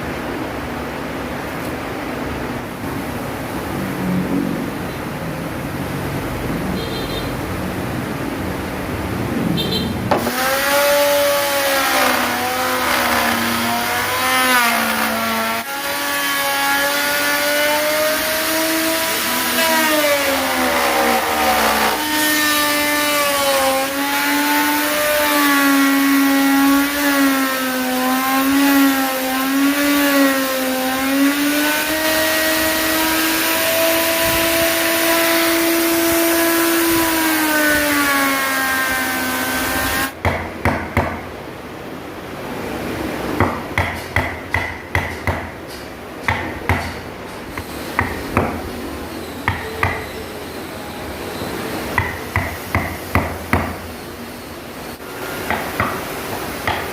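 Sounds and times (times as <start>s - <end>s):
power tool motor running: 10.2s - 40.2s.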